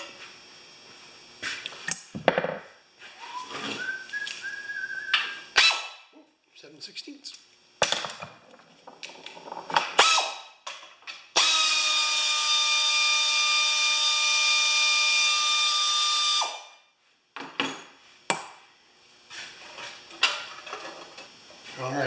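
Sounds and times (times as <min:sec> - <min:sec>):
power drill running: 0:11.3 - 0:16.6.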